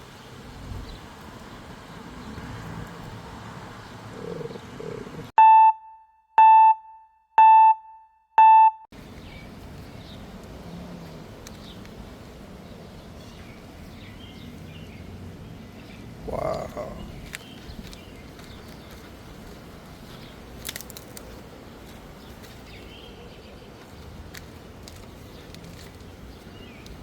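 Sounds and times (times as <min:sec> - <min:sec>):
faint outdoor background: 0:00.0 - 0:27.0
electronic beeps: 0:05.4 - 0:08.9.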